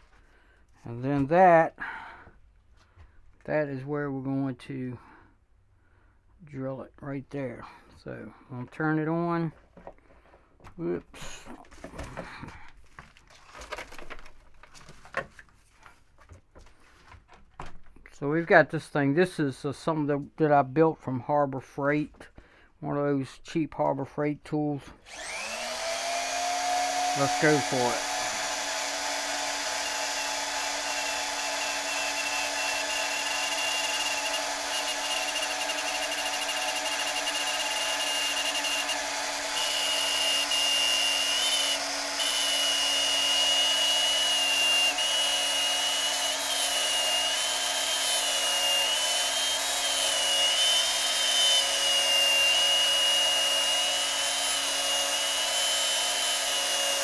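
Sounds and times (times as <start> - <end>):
electric drill whining: 25.0 - 57.0.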